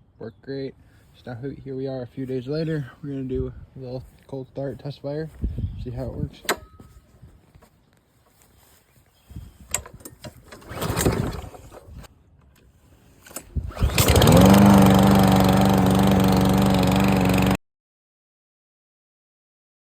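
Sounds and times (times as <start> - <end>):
lawn mower engine running: 10.3 - 12.0, 13.1 - 17.6
pull cord yanked: 13.2 - 14.6.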